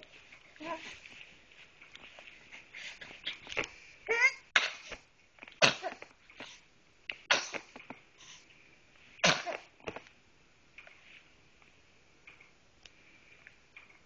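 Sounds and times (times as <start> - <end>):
person sneezing: 4.6 - 5.0, 5.6 - 6.0, 7.3 - 7.7, 9.2 - 9.7.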